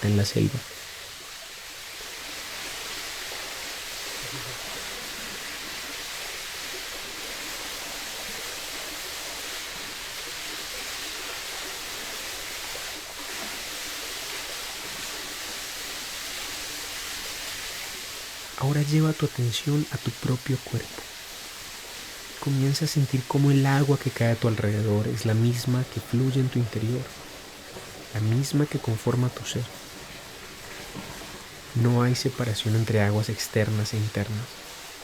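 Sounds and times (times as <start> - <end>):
creek water babbling: 0.0 - 35.0.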